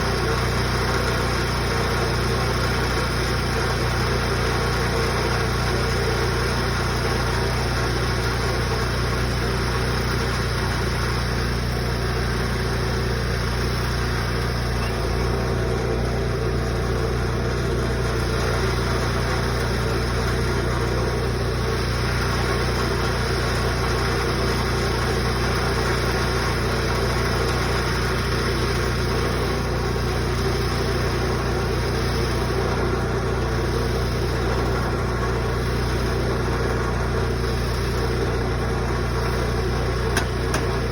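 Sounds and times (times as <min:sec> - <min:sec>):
engine running steadily: 0:00.0 - 0:40.9.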